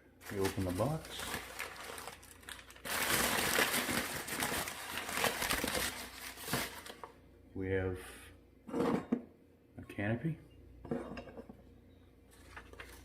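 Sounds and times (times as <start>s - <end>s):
packing crinkling and rustling: 0.2s - 7.1s, 12.3s - 13.0s.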